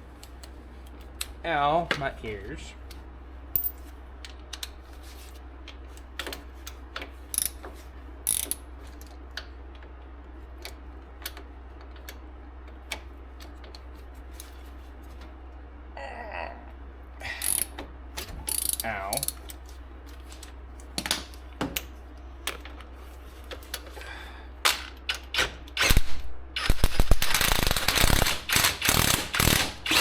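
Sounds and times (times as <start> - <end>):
steady low hum: 0.0 - 30.0
ratchet wrench clicking: 7.3 - 7.6, 8.3 - 8.6, 17.4 - 17.7, 18.5 - 19.4, 27.4 - 30.0.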